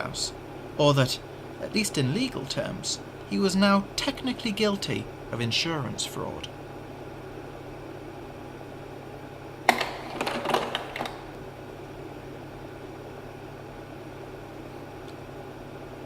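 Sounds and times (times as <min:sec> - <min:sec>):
projector cooling fan hum: 0:00.0 - 0:16.0
slide changer clack and clatter: 0:09.7 - 0:11.4.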